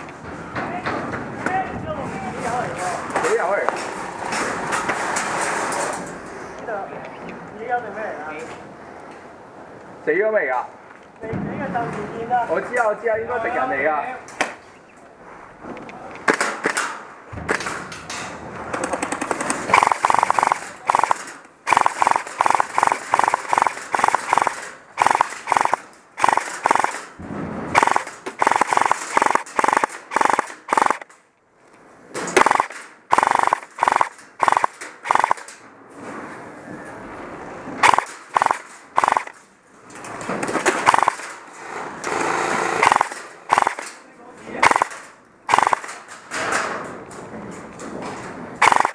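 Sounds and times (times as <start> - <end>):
airsoft guns firing bursts: 18.8 - 27.1, 27.7 - 31.2, 32.4 - 35.5, 37.8 - 39.4, 40.7 - 41.3, 42.2 - 44.0, 44.6 - 46.1, 48.6 - 48.9.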